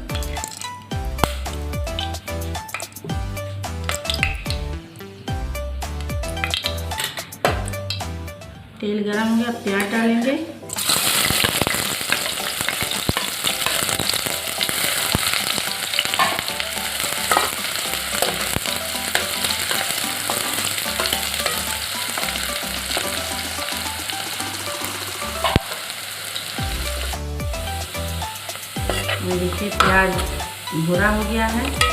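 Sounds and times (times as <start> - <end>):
onion sizzling in oil: 10.7 - 31.9.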